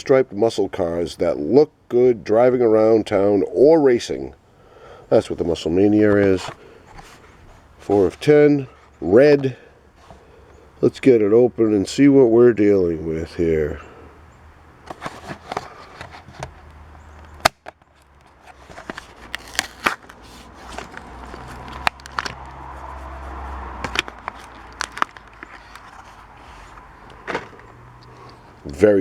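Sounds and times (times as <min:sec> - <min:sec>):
plastic blister crackling: 0:14.8 - 0:28.3
cardboard tearing: 0:14.9 - 0:27.6.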